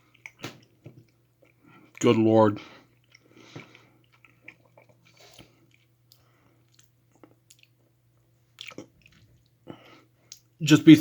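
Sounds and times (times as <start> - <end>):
chewing gummy candy: 0.0 - 7.9, 8.5 - 9.6
mouth smacks: 8.6 - 9.2.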